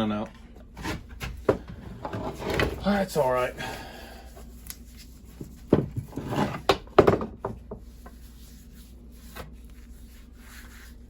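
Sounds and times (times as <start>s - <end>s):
sharp knocks at a workbench: 6.7s - 7.8s.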